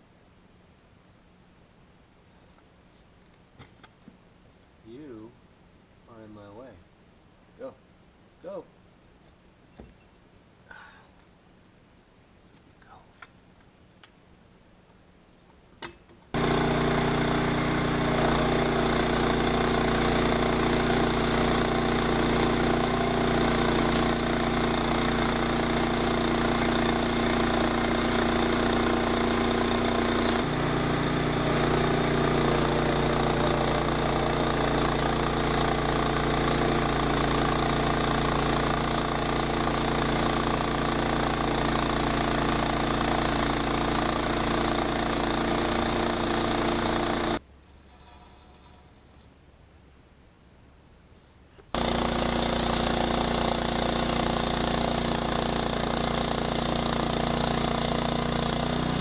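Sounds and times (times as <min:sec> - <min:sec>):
sawmill engine running: 0:16.4 - 0:47.4, 0:51.8 - 0:59.0.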